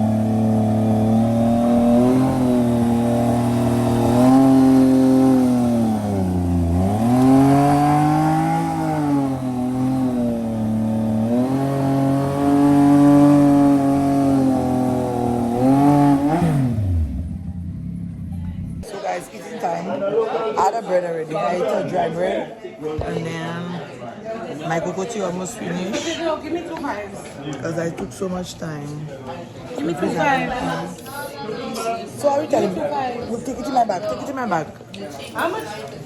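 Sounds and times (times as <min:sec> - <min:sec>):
motorcycle engine running: 0:00.0 - 0:18.8.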